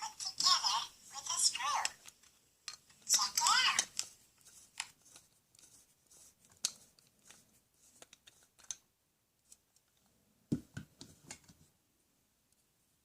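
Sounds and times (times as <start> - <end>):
plastic toy clicks and taps: 1.8 - 4.1.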